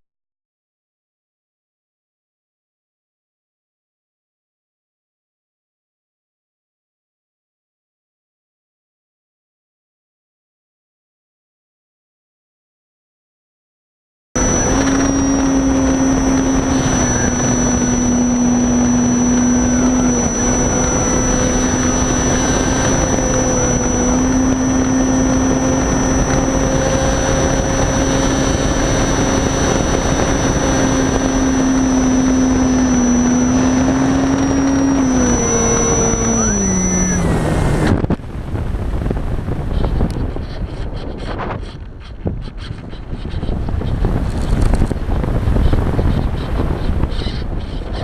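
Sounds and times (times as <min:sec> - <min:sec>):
wind rushing past: 0:14.4 - 0:42.4
model plane motor whining: 0:14.4 - 0:48.0.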